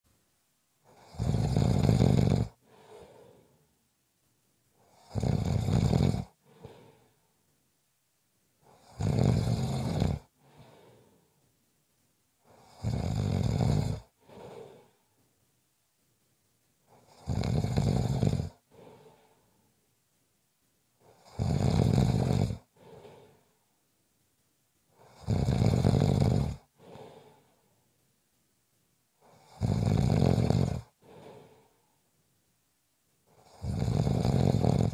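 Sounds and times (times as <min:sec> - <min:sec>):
person snoring: 0:00.9 - 0:03.6, 0:04.8 - 0:07.2, 0:08.7 - 0:11.2, 0:12.5 - 0:15.0, 0:17.0 - 0:19.4, 0:21.0 - 0:23.5, 0:25.0 - 0:27.5, 0:29.2 - 0:31.8, 0:33.4 - 0:34.9
faint breath: 0:02.5 - 0:03.9, 0:06.3 - 0:07.6, 0:10.2 - 0:11.6, 0:14.0 - 0:15.4, 0:18.5 - 0:19.9, 0:22.6 - 0:23.9, 0:26.6 - 0:28.0, 0:30.8 - 0:32.2.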